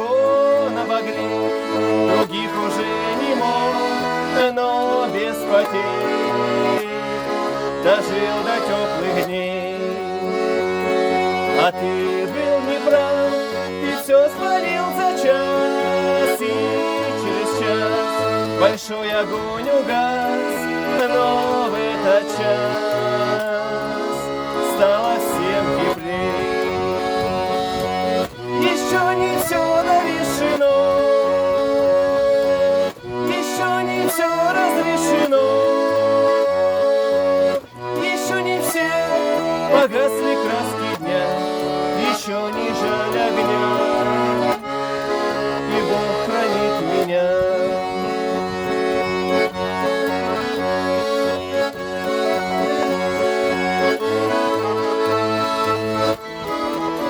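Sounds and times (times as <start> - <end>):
button accordion playing: 0.0 - 57.0.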